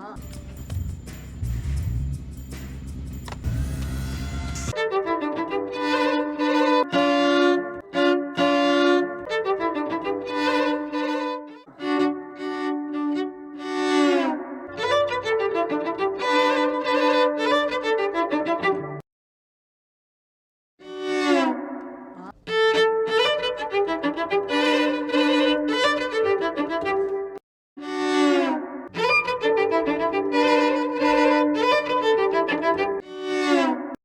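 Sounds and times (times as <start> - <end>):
low rumble: 0.2 - 4.7
cello melody with pitch slides: 3.4 - 19.0, 20.8 - 34.0.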